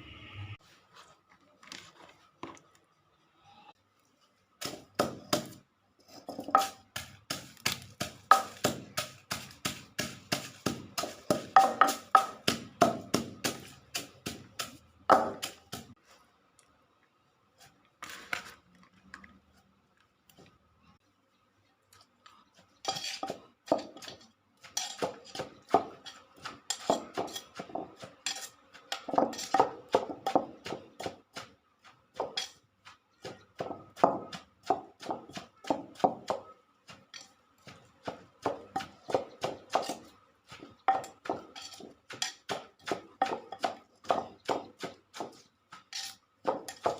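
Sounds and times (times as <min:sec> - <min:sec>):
pestle pounding in mortar: 0:04.6 - 0:05.6, 0:06.2 - 0:16.0, 0:22.9 - 0:46.9.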